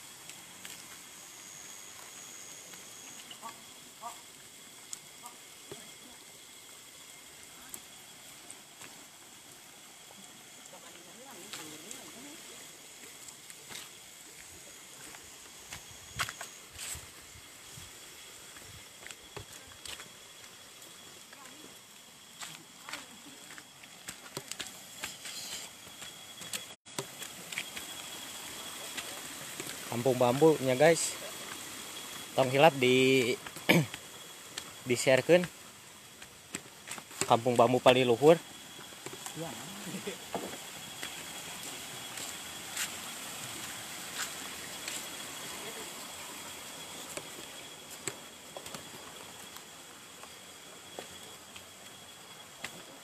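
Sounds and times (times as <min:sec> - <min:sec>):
high insect drone: 0:00.0 - 0:53.0
crackles and clicks: 0:00.2 - 0:06.0
faint hiss: 0:27.0 - 0:53.0.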